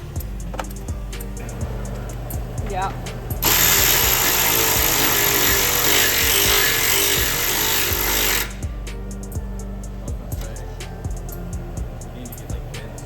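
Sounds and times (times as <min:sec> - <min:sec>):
air impact wrench hammering: 0:00.0 - 0:13.0.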